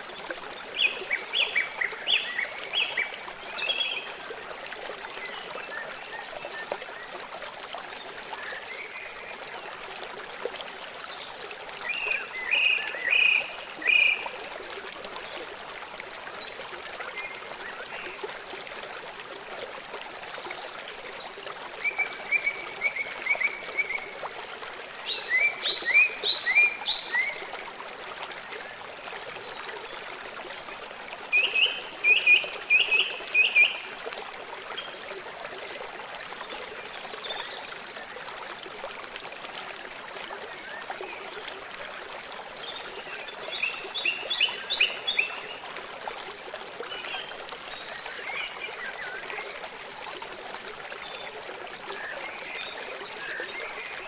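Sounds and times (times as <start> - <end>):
stream running: 0.0 - 54.0.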